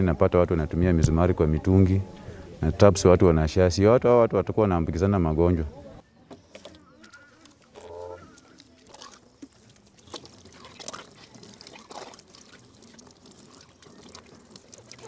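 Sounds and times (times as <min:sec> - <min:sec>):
water pouring from a tap: 0:08.3 - 0:15.0.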